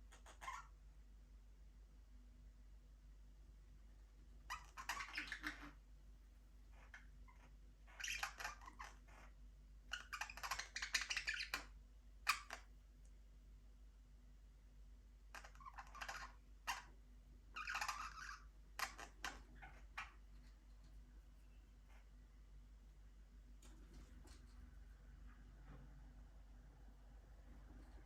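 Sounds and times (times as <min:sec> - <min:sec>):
budgerigars chirping: 0:00.1 - 0:00.7, 0:04.5 - 0:05.8, 0:06.7 - 0:09.3, 0:09.9 - 0:11.7, 0:12.3 - 0:12.7, 0:15.3 - 0:16.9, 0:17.6 - 0:20.2.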